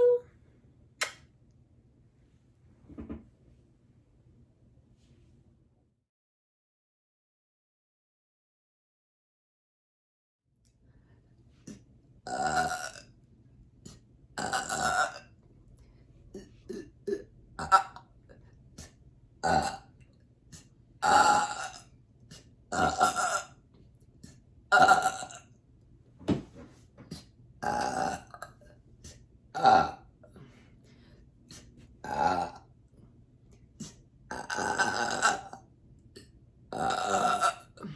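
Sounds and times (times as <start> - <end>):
woman burping: 12.3 - 13.0, 16.4 - 18.1, 22.7 - 23.5, 29.6 - 30.0, 34.3 - 35.6, 36.2 - 37.9.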